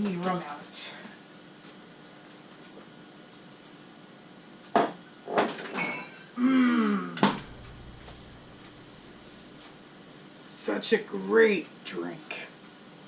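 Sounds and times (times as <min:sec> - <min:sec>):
short falling pitch sound: 0:07.3 - 0:09.6.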